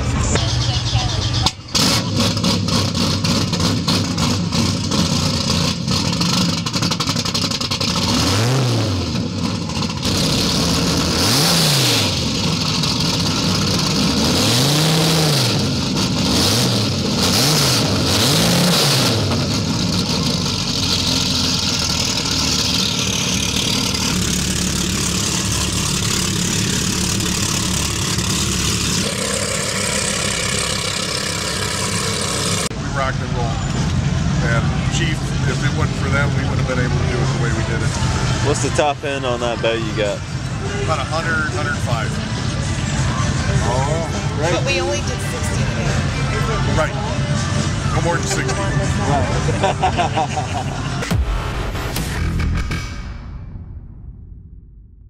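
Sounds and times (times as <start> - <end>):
powerboat engines revving: 0.0 - 51.0.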